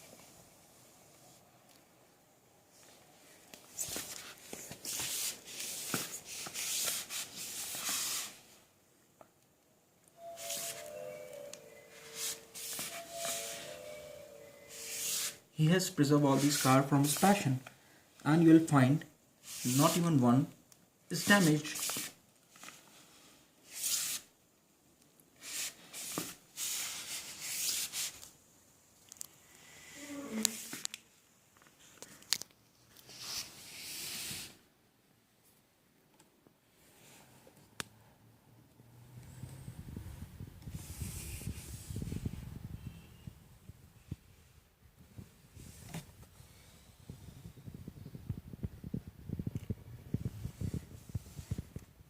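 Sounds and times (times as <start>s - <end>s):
rubbing hissing noise: 3.8s - 8.6s, 14.7s - 15.5s, 19.4s - 20.1s, 33.1s - 34.7s, 40.7s - 42.4s.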